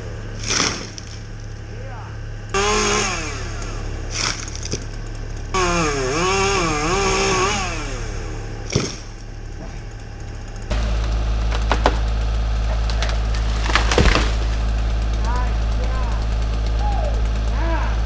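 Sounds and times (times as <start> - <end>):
steady low hum: 0.0 - 18.0
chainsaw revving and cutting: 2.4 - 9.1, 10.5 - 18.0
sharp knocks: 11.5 - 12.1, 12.7 - 14.6.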